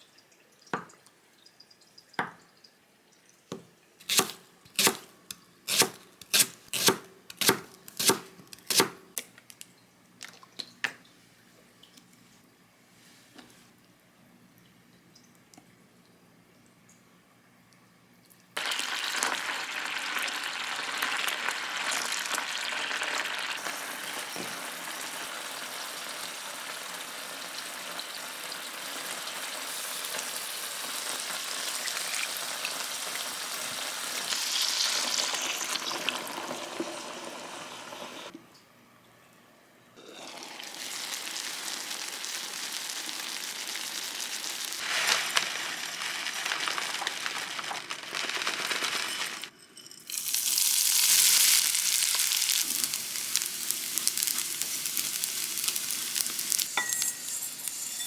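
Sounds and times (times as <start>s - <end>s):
food sizzling in a frying pan: 18.6s - 38.3s, 40.1s - 49.5s, 50.1s - 58.0s.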